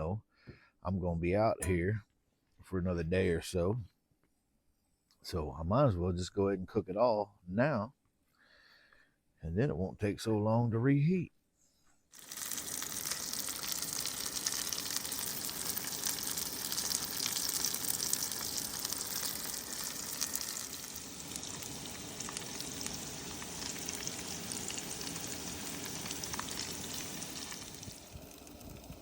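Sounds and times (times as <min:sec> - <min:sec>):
sausage sizzling in a frying pan: 0:12.2 - 0:29.0.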